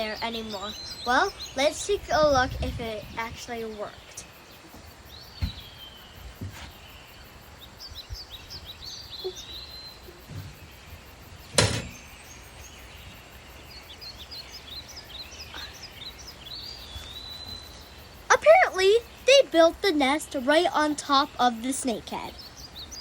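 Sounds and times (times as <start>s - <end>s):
songbirds chirping: 0.0s - 23.0s
loud sharp thump: 5.4s - 5.7s, 11.5s - 12.1s.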